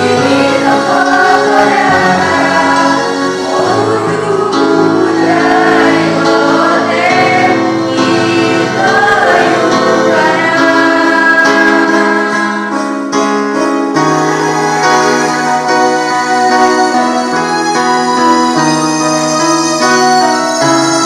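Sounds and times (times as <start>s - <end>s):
group singing in unison: 0.0s - 12.8s.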